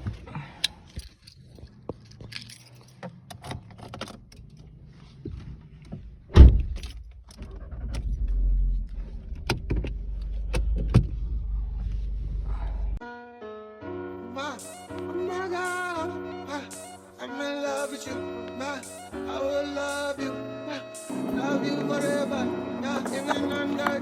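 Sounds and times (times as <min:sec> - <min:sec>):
keys jangling: 0:00.6 - 0:04.6
car engine running: 0:07.4 - 0:13.0.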